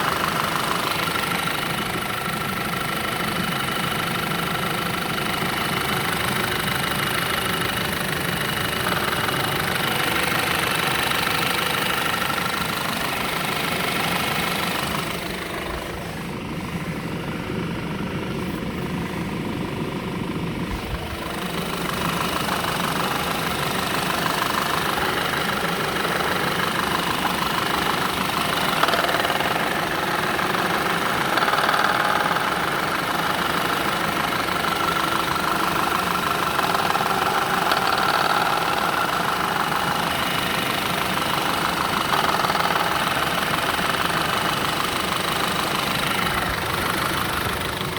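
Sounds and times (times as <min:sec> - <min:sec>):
car engine idling: 0:00.0 - 0:47.9
engine knocking: 0:00.0 - 0:47.9.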